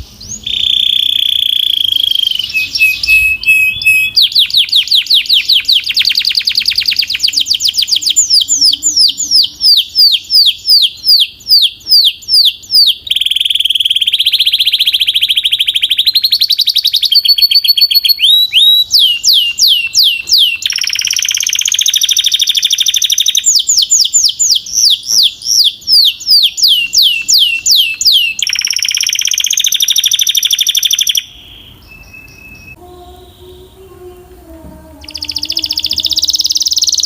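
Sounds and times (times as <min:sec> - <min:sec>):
canary singing trills: 0:00.0 - 0:34.2, 0:34.8 - 0:37.0.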